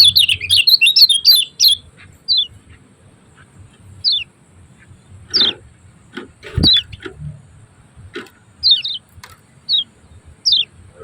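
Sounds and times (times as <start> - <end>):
bird giving sharp high calls: 0.0 - 2.5.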